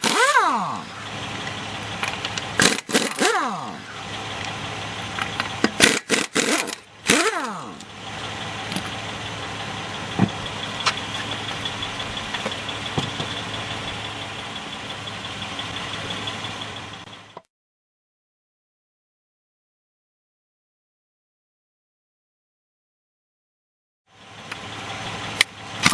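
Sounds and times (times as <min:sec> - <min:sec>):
air tool bursts: 0:00.0 - 0:00.6, 0:02.6 - 0:03.5, 0:05.8 - 0:07.7
air compressor whining: 0:00.0 - 0:17.1.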